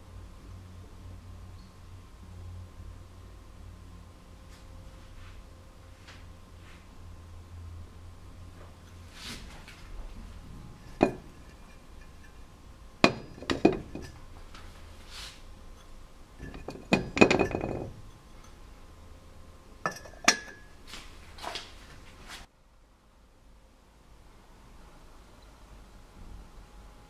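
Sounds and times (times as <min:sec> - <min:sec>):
glassware clinking: 0:10.9 - 0:12.4, 0:13.0 - 0:14.2, 0:16.4 - 0:18.6, 0:19.9 - 0:20.8.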